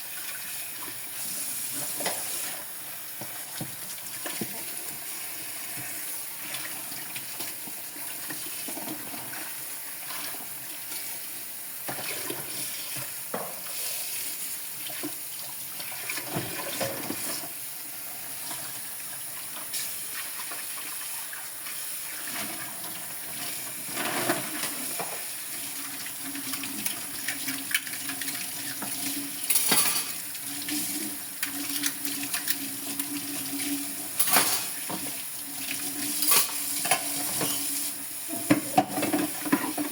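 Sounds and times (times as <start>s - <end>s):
tap water running into sink: 0.0s - 11.1s, 18.3s - 39.9s
dishes clinking: 29.5s - 30.2s, 34.2s - 34.8s, 36.2s - 37.6s.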